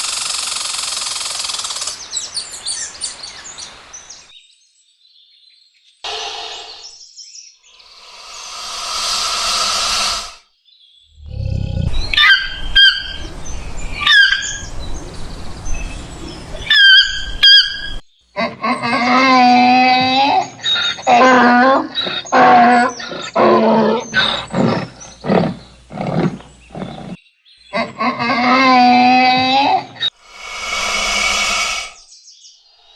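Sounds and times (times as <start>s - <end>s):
animal high gliding cries: 6.1s - 7.0s, 7.8s - 10.4s, 30.3s - 32.0s
long wavering animal calls: 7.8s - 10.4s, 11.3s - 14.7s, 30.2s - 32.0s.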